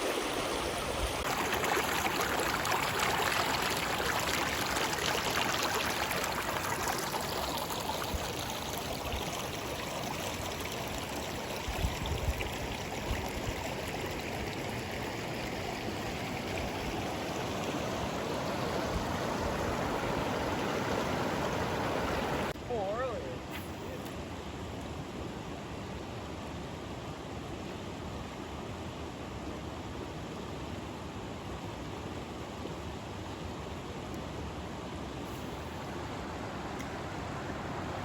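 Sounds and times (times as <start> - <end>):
river water rushing over rocks: 0.0 - 11.5, 15.2 - 23.3, 26.9 - 38.0.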